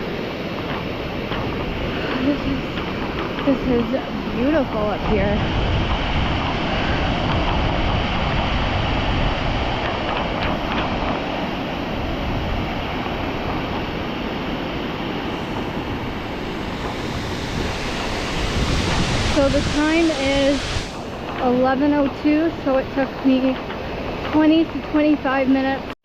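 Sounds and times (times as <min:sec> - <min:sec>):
wind rumbling on microphone: 0:00.0 - 0:26.0
waterfall rushing: 0:14.0 - 0:22.6.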